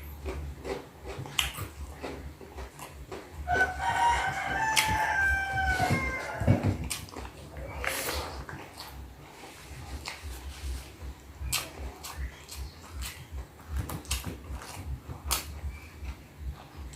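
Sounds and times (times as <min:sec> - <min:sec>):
rooster crowing: 0:03.5 - 0:06.8.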